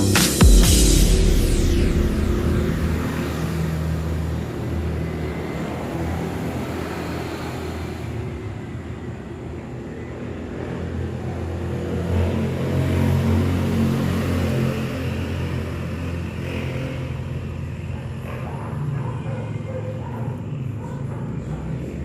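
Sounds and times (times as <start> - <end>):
car engine running: 0.3 - 4.4.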